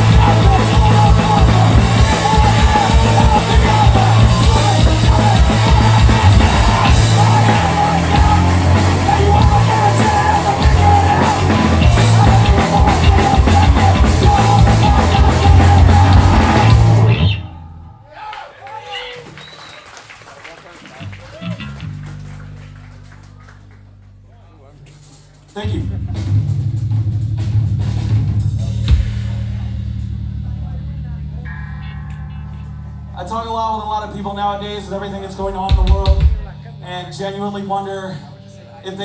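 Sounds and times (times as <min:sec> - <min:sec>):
fast dense drumming: 0:00.0 - 0:17.3, 0:25.4 - 0:31.4, 0:35.5 - 0:36.6
punk band playing live: 0:00.0 - 0:17.8, 0:21.0 - 0:37.5.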